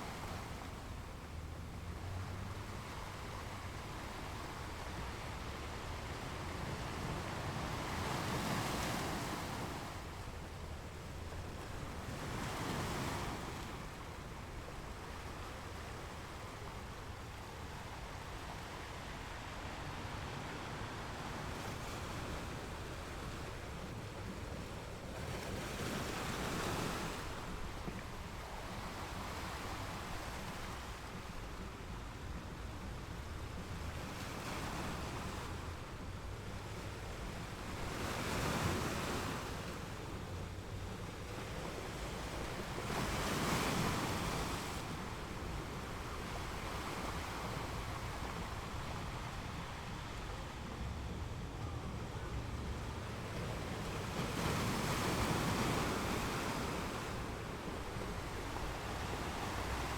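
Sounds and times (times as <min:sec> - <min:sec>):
waves breaking: 0:33.5 - 0:59.9
ocean surf washing onto beach: 0:38.7 - 0:59.9.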